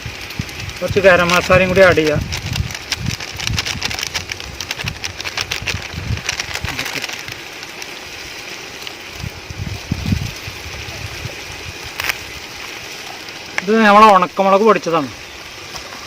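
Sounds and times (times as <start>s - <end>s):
spices sizzling in a pan: 4.4s - 16.0s.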